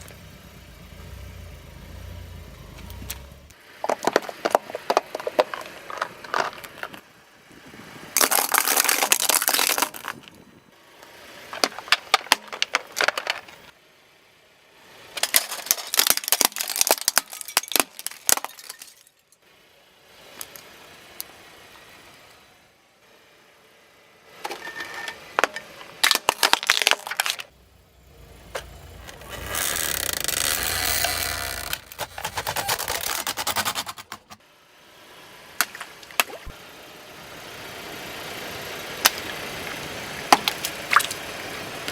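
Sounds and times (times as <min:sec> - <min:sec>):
low engine rumble: 0:00.0 - 0:08.3, 0:27.5 - 0:41.9
objects cracking under tyre: 0:03.8 - 0:07.1, 0:08.2 - 0:10.4, 0:11.5 - 0:13.7, 0:15.1 - 0:19.2, 0:25.3 - 0:34.4, 0:40.3 - 0:41.3.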